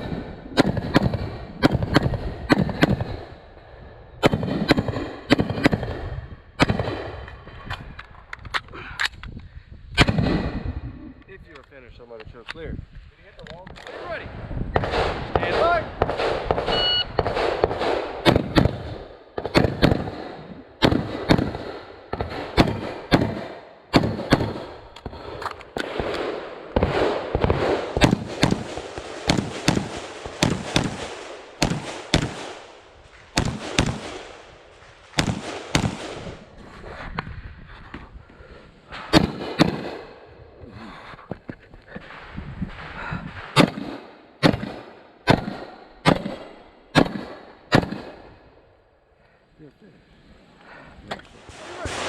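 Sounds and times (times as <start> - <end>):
carbine firing rapid shots: 14.8 - 24.7, 25.8 - 32.7, 33.4 - 34.4, 35.1 - 36.4
shot timer beep: 16.7 - 17.2.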